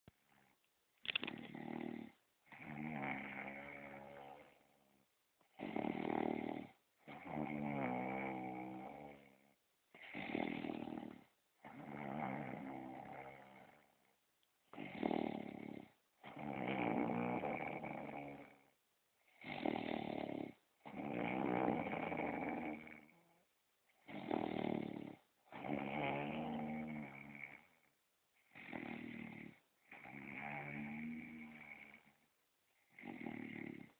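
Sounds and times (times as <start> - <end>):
rhythmic snoring: 1.1 - 33.9.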